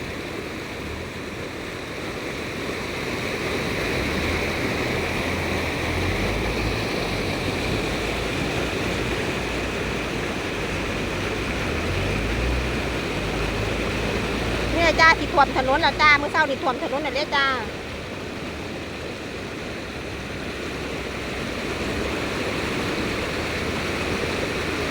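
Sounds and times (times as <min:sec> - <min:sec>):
floodwater rushing: 0:00.0 - 0:24.9.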